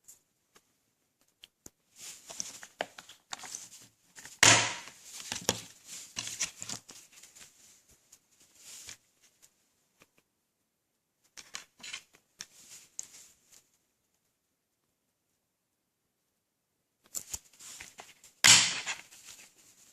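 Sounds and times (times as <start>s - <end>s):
packaging rustling and crinkling: 2.0s - 7.6s.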